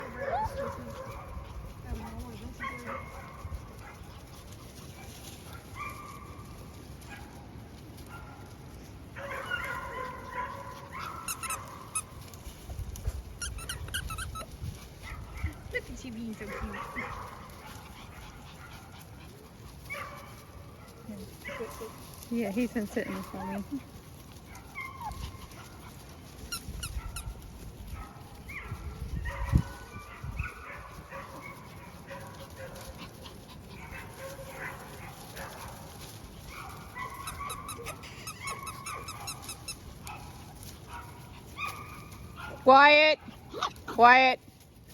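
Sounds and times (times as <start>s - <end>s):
puppy yips: 9.2s - 12.1s, 13.4s - 15.5s, 24.5s - 25.6s, 26.4s - 27.4s, 36.5s - 42.6s
puppies whining and yipping: 9.3s - 20.0s, 22.8s - 30.7s, 31.3s - 42.5s, 43.4s - 44.0s
puppies whining: 13.2s - 14.6s, 26.3s - 27.4s, 36.9s - 40.7s.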